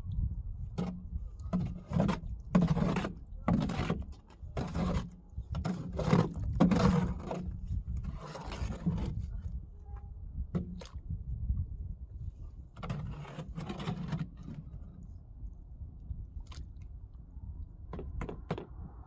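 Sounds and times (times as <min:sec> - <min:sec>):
tool scraping rough surface: 0:00.8 - 0:09.5, 0:12.8 - 0:14.8.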